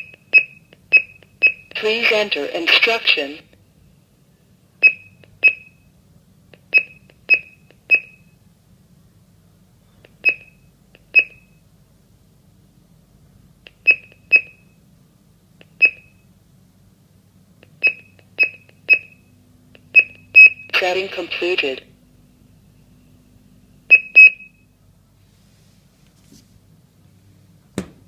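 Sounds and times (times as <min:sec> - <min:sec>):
keypad beeps: 0:00.0 - 0:01.8, 0:04.8 - 0:05.8, 0:06.7 - 0:08.3, 0:10.2 - 0:11.6, 0:13.8 - 0:14.7, 0:15.6 - 0:16.2, 0:17.8 - 0:19.2, 0:19.9 - 0:20.8, 0:23.9 - 0:24.6.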